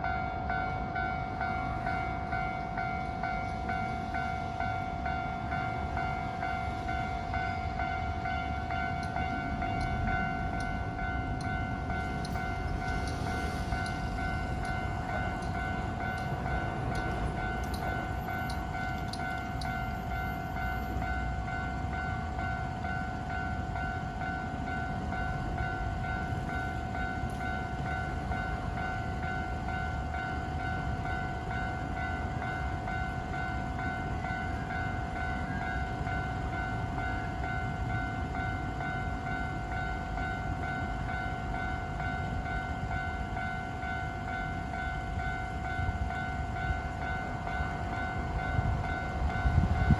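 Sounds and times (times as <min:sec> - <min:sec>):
electric train rumble: 0:00.0 - 0:49.9
level-crossing warning bell: 0:00.0 - 0:49.9
faint ticks: 0:12.2 - 0:14.0, 0:16.9 - 0:19.8.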